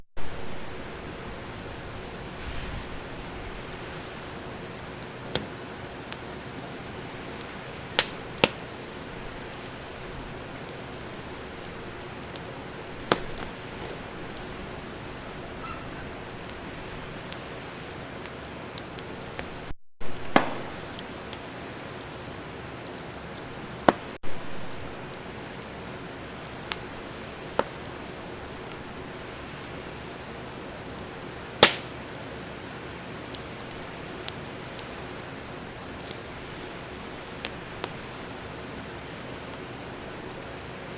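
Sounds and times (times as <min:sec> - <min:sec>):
loud sharp fire pops: 0:00.2 - 0:14.7, 0:20.0 - 0:22.2, 0:26.4 - 0:28.0, 0:31.5 - 0:32.2, 0:33.2 - 0:38.6
wood fire crackling: 0:00.2 - 0:40.9.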